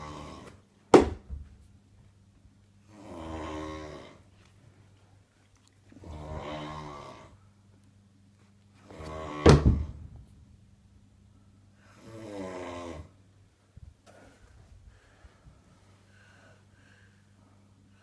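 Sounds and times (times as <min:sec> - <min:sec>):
man snoring: 0:00.0 - 0:00.5, 0:02.9 - 0:04.2, 0:06.0 - 0:07.3, 0:08.9 - 0:09.6, 0:12.0 - 0:13.2.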